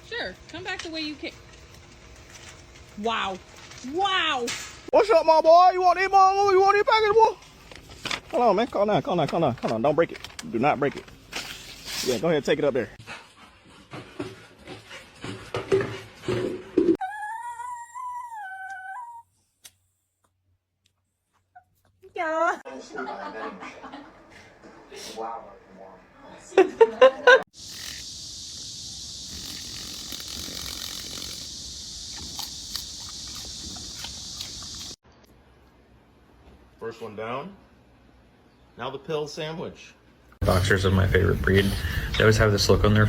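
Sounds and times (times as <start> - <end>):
steady hiss: 27.5 - 35.0
muffled animal noises: 27.6 - 35.0.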